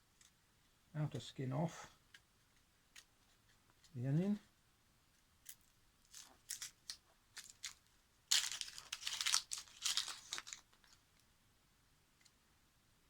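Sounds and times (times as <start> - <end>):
onion skin crackling and tearing: 5.4 - 10.9.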